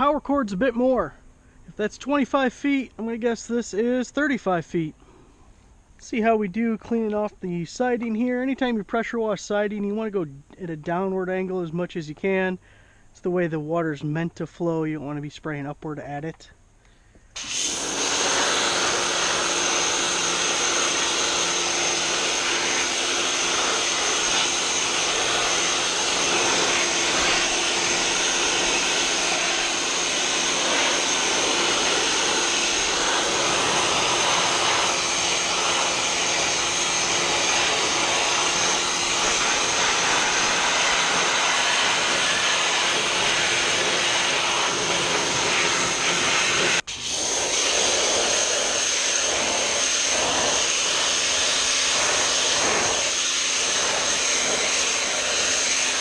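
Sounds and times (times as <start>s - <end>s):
water jet hissing on siding: 17.1s - 56.0s
pressure washer motor whine: 17.4s - 56.0s.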